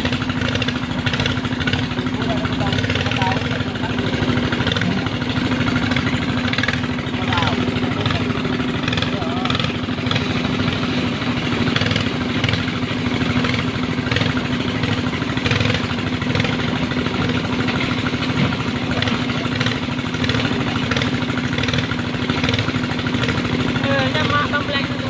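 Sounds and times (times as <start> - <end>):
diesel engine droning: 0.0 - 25.0.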